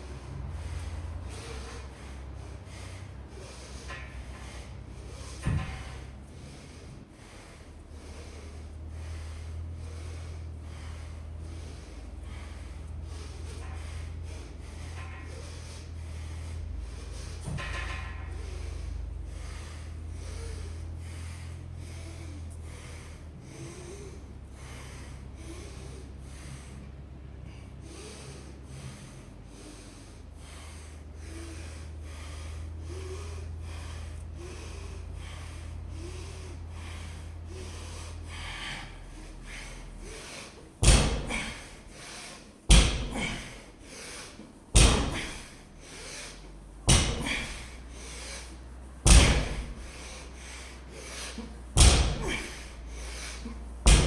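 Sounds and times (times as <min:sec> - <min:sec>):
steady low hum: 0:00.0 - 0:54.0
barbell thudding onto floor: 0:40.8 - 0:41.7, 0:42.7 - 0:43.5, 0:44.8 - 0:45.4, 0:46.9 - 0:47.6, 0:49.1 - 0:50.0, 0:51.8 - 0:52.7.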